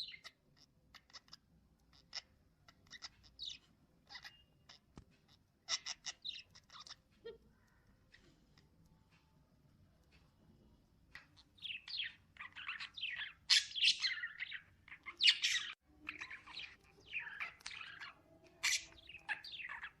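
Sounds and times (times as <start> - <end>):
birds chirping and squawking: 0.0 - 8.8, 11.0 - 20.0.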